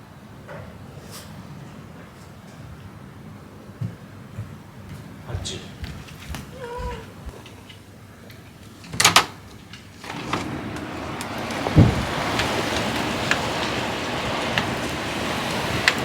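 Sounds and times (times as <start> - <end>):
blizzard wind rushing: 10.0 - 16.0
wind gust thumping microphone: 10.0 - 16.0.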